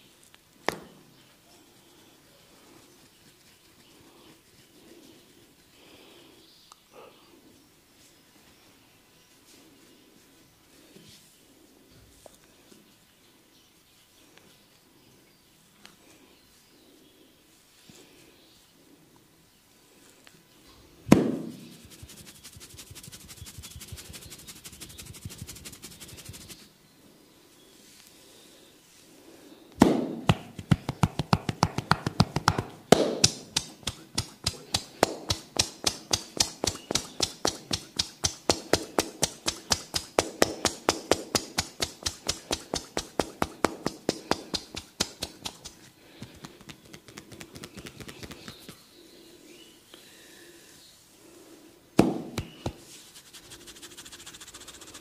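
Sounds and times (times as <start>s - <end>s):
sharp knock: 29.8s - 45.7s, 52.0s - 52.8s
percussive massage taps: 29.8s - 48.8s, 52.0s - 52.8s.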